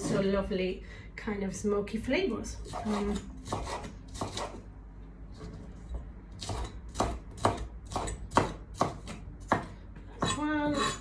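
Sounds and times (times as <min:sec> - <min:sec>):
knife chopping on cutting board: 0:02.7 - 0:04.6, 0:06.4 - 0:11.0.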